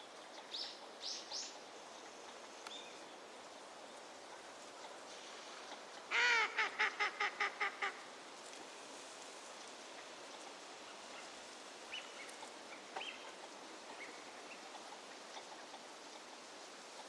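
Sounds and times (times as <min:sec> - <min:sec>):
steady background hiss: 0:00.0 - 0:17.0
faint bird calls: 0:04.2 - 0:08.1.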